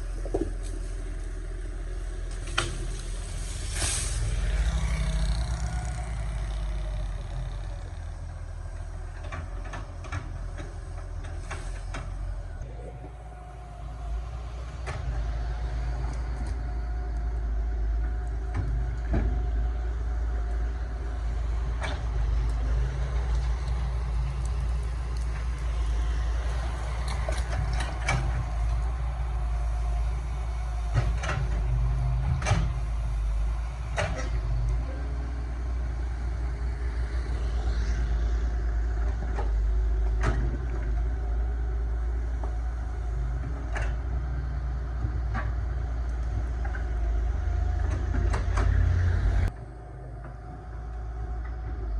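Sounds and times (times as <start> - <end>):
excavator diesel engine running: 0.0 - 51.9.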